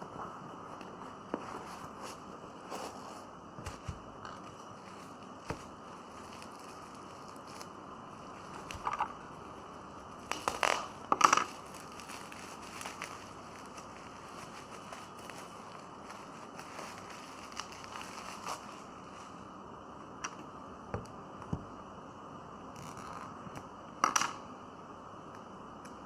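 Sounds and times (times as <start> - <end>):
packaging crinkling and clicking: 0.1 - 19.3.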